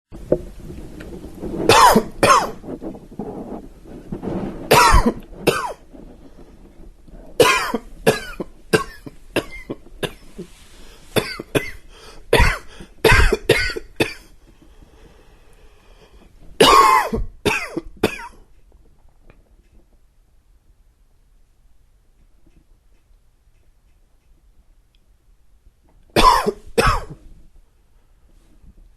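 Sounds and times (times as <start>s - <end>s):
man coughing: 4.7s - 5.8s, 7.4s - 10.4s, 11.2s - 14.2s, 16.6s - 18.4s, 26.2s - 27.2s.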